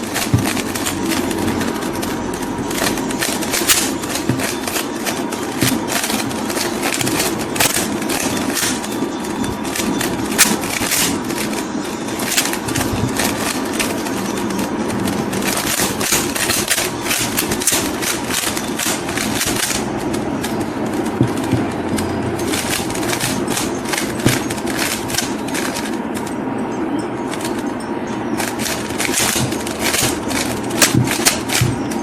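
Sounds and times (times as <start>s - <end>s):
puzzle cube clicking: 0.0s - 26.3s, 28.4s - 32.0s.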